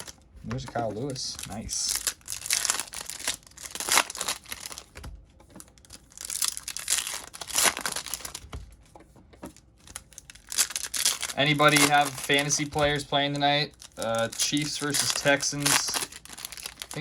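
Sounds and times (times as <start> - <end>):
foil wrappers tearing and crinkling: 0.0 - 5.0, 5.7 - 8.5, 9.8 - 17.0.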